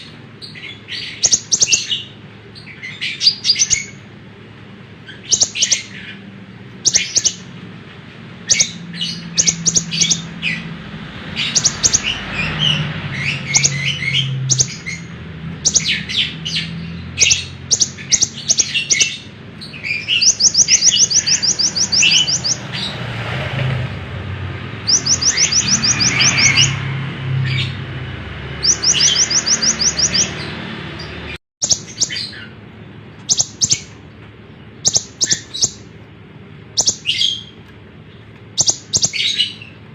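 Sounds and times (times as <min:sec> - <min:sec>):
bird sharp high chirps: 0:00.0 - 0:04.0, 0:05.0 - 0:06.2, 0:06.8 - 0:07.5, 0:08.4 - 0:10.7, 0:11.3 - 0:22.9, 0:24.8 - 0:26.8, 0:28.6 - 0:32.5, 0:33.2 - 0:34.0, 0:34.8 - 0:35.9, 0:36.7 - 0:37.6, 0:38.5 - 0:39.8
bird rattling trills: 0:06.8 - 0:07.5, 0:08.4 - 0:10.6, 0:11.3 - 0:16.2, 0:17.1 - 0:22.9, 0:24.8 - 0:26.8, 0:33.2 - 0:34.0, 0:34.8 - 0:35.9, 0:36.7 - 0:37.6, 0:38.5 - 0:39.8.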